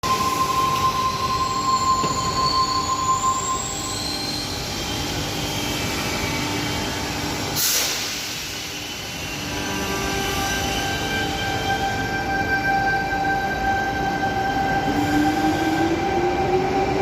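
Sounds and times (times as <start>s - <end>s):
train wheels squealing on rails: 0.0s - 17.0s
short hiss: 7.6s - 8.4s.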